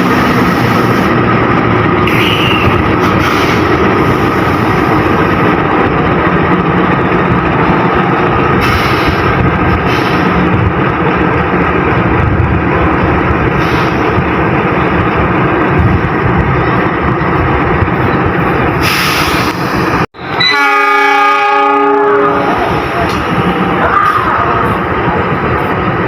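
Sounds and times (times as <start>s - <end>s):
train wheels rumbling: 0.0s - 26.0s
train horn: 20.4s - 22.7s.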